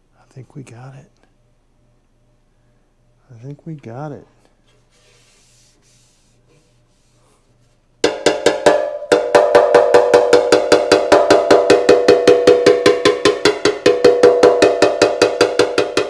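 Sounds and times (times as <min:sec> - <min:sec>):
metallic tapping on steel tank: 0:08.0 - 0:16.0.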